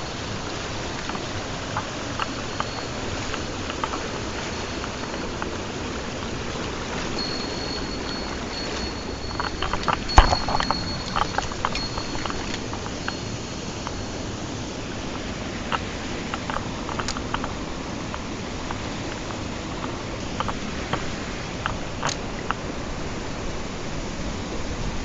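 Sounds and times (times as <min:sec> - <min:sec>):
mountain stream rushing: 0:00.0 - 0:25.0
sharp clicks and knocks: 0:00.4 - 0:05.6, 0:07.2 - 0:14.0, 0:15.7 - 0:22.6.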